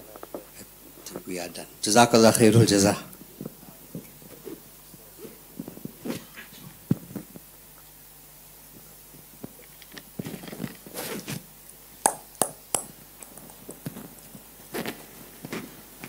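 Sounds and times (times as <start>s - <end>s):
rustling and shuffling: 3.2s - 7.6s, 8.7s - 11.5s, 13.2s - 16.0s
sharp knocks: 12.1s - 13.8s.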